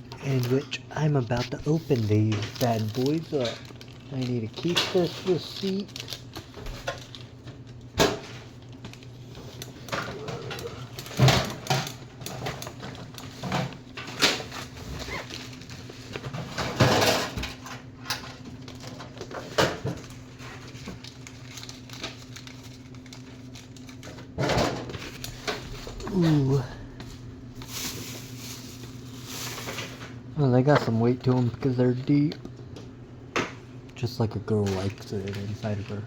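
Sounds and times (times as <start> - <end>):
packaging clicks and rustles: 0.1 - 26.8, 34.4 - 36.0
steady low hum: 22.0 - 36.0.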